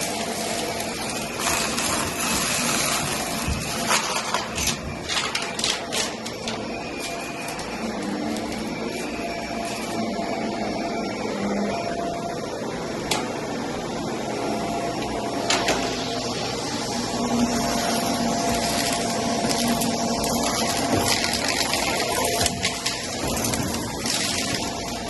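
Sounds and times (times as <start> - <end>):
vacuum cleaner running on carpet: 0.0 - 25.0.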